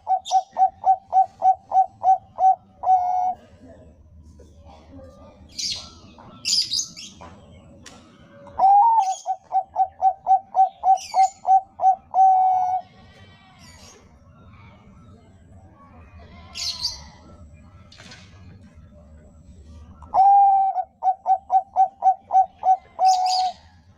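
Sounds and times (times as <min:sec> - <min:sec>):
dove cooing: 0:00.0 - 0:03.8, 0:08.6 - 0:12.9, 0:20.0 - 0:23.7.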